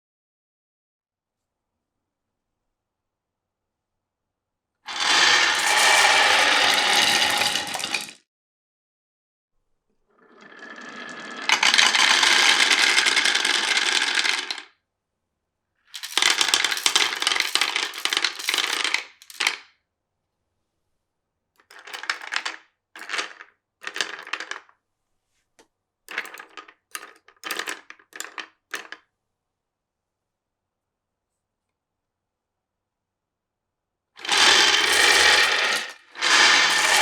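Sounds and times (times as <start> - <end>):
marbles clicking against wood: 4.9 - 8.1, 11.1 - 14.6, 16.0 - 19.6, 21.6 - 24.6, 26.1 - 29.0, 34.2 - 37.0
marbles rolling on wooden run: 4.9 - 8.2, 10.3 - 14.7, 16.0 - 19.6, 21.6 - 24.7, 26.1 - 29.0, 34.2 - 37.0.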